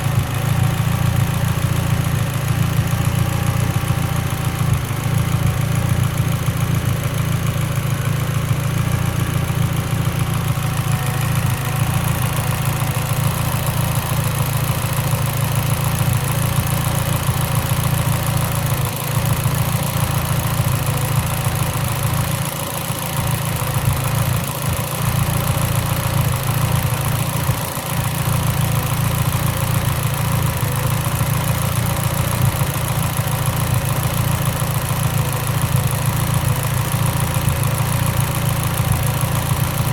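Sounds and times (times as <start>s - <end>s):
car engine idling with misfire: 0.0s - 39.9s.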